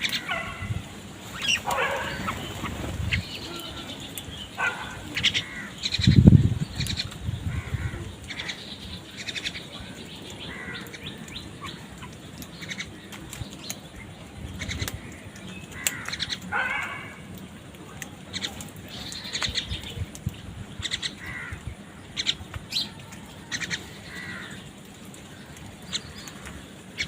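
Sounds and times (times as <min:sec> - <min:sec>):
crows cawing: 0:04.6 - 0:06.0, 0:07.5 - 0:08.6, 0:10.0 - 0:11.8, 0:15.0 - 0:17.3, 0:20.9 - 0:22.3, 0:23.4 - 0:24.7.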